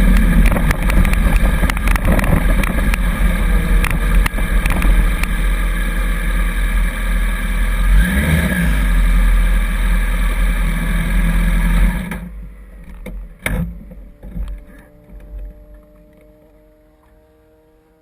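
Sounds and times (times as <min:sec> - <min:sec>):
wind and road rumble: 0:00.0 - 0:18.0
knocks and clunks: 0:00.1 - 0:05.4, 0:12.1 - 0:16.2.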